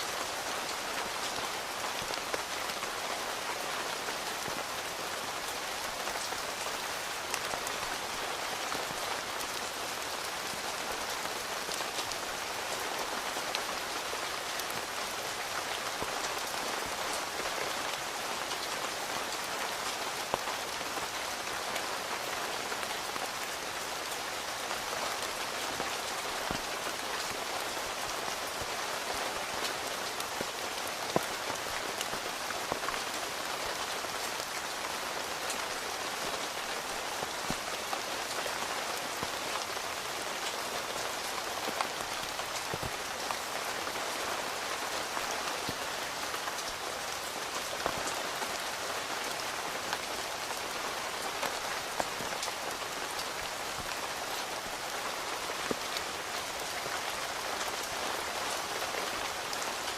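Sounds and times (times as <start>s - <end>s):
rain on a tent: 0.0s - 59.9s.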